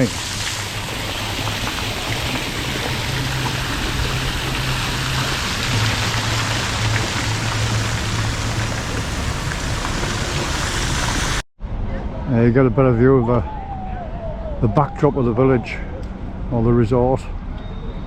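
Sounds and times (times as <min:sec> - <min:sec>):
running splashing water: 0:00.0 - 0:11.4.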